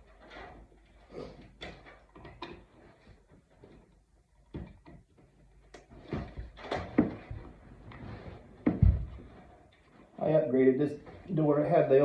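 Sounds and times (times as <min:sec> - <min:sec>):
knocks and rubbing on door frame: 0:05.9 - 0:09.6.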